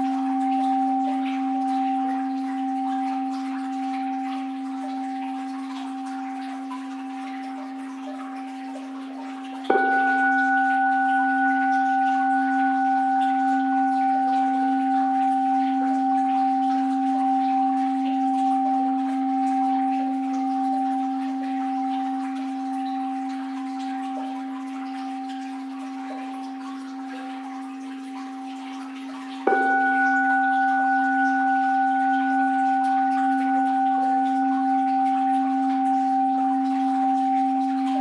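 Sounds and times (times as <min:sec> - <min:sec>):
bowl bell ringing: 0:00.0 - 0:38.0.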